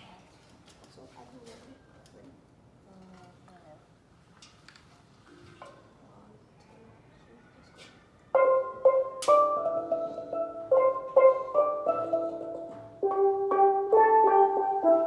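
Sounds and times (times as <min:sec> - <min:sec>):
steel pan melody: 0:08.4 - 0:15.0.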